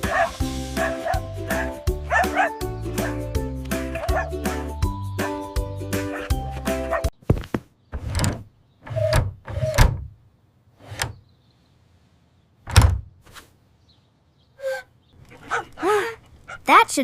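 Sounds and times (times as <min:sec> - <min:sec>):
door knocks and thumps: 0:12.7 - 0:13.1.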